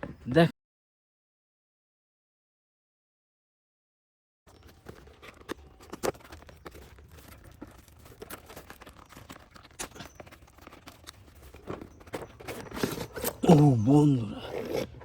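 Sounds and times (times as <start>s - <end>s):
packaging clicks taps and rustles: 4.5s - 13.4s.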